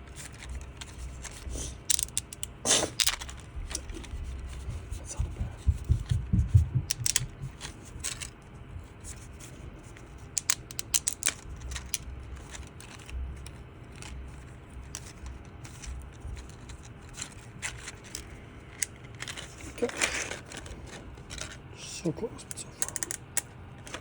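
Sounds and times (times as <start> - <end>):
plastic toy segments clicking: 1.9 - 3.8, 6.9 - 8.3, 10.4 - 13.1, 22.5 - 24.0.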